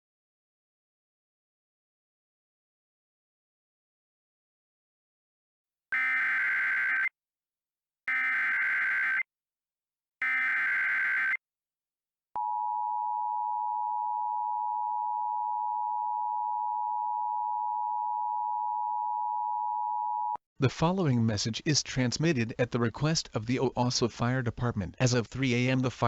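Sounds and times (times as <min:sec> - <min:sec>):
digital data tone bursts: 0:06.0 - 0:07.1, 0:10.2 - 0:11.4.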